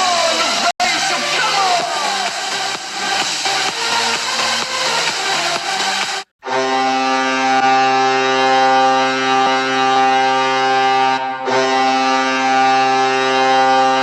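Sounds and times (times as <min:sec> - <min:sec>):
arena goal horn blasts: 0:06.4 - 0:14.0.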